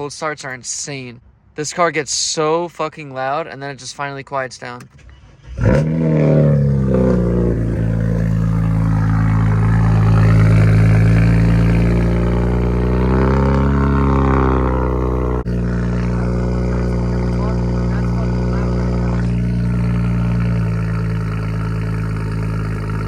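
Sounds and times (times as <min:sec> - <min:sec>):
car engine cold start idle: 0:04.8 - 0:23.0.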